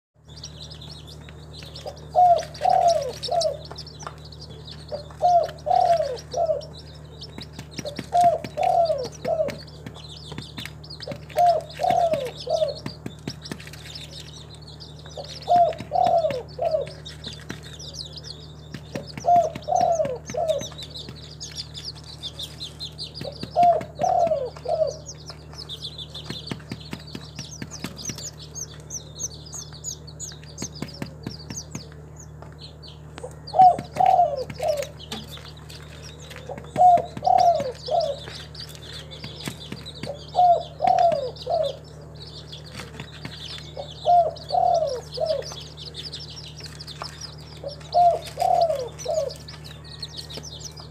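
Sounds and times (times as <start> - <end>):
small birds chirping: 0.2 - 50.9
steady low hum: 0.2 - 50.9
dove cooing: 1.8 - 4.0, 4.6 - 13.5, 15.1 - 18.0, 18.9 - 21.8, 23.0 - 25.2, 33.2 - 35.3, 35.9 - 41.9, 43.6 - 46.2, 47.5 - 50.4.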